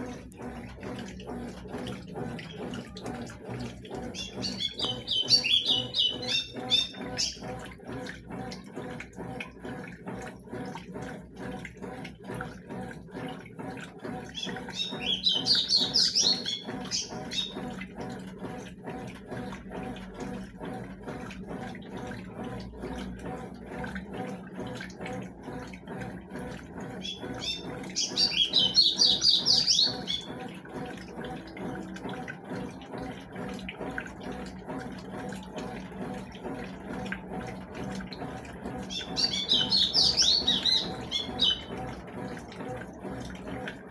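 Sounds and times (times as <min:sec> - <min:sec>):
washing machine water sloshing: 0:00.0 - 0:43.9
rapid high bird chirps: 0:04.2 - 0:07.4, 0:14.4 - 0:17.6, 0:27.1 - 0:30.3, 0:38.9 - 0:41.7.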